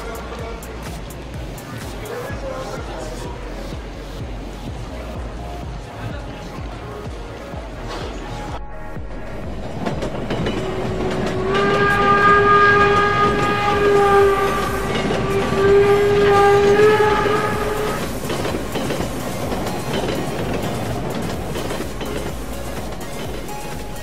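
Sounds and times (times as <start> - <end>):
train rumbling past: 0.0 - 24.0
train horn: 10.5 - 18.2.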